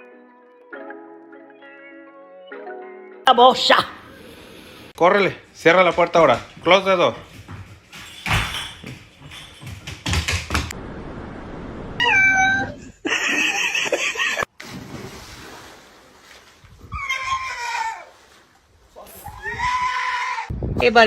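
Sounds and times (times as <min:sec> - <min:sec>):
knocks: 0:07.4 - 0:10.7
cat meowing: 0:12.0 - 0:12.8, 0:16.9 - 0:18.1, 0:19.2 - 0:20.5.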